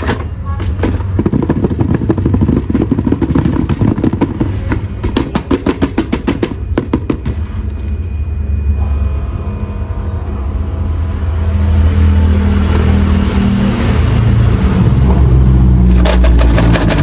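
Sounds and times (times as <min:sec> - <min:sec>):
plastic toy parts clattering: 0:15.9 - 0:17.0.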